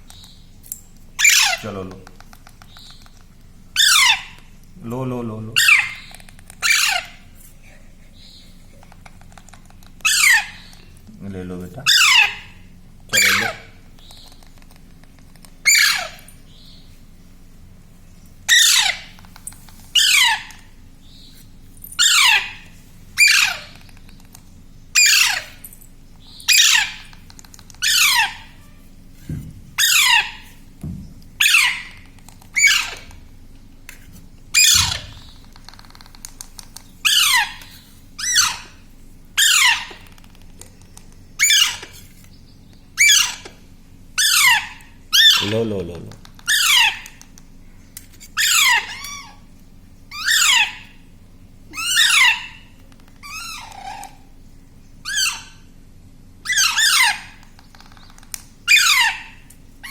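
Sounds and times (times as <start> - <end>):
baby parrot squawking: 1.2 - 1.9, 3.8 - 4.5, 5.6 - 7.3, 10.0 - 10.8, 11.8 - 13.8, 15.6 - 16.7, 18.5 - 19.2, 20.0 - 20.8, 22.0 - 24.0, 25.0 - 25.6, 26.4 - 28.8, 29.8 - 30.6, 31.4 - 33.2, 34.5 - 36.1, 37.0 - 38.8, 39.4 - 40.2, 41.4 - 42.0, 43.0 - 43.6, 44.2 - 45.7, 46.3 - 47.3, 48.3 - 49.5, 50.1 - 51.0, 51.7 - 54.3, 55.0 - 55.7, 56.4 - 59.9.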